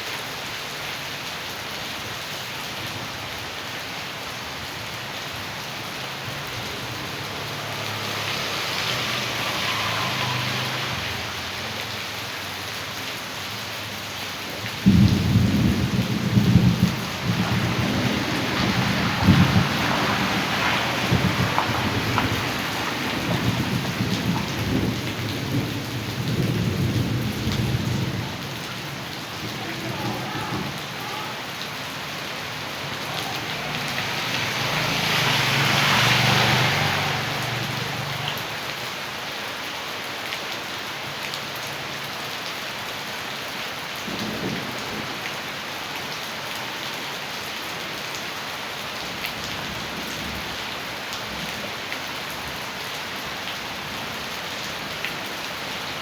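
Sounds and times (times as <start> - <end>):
heavy rain falling: 0.0 - 56.0
rainwater runoff rushing: 0.0 - 56.0.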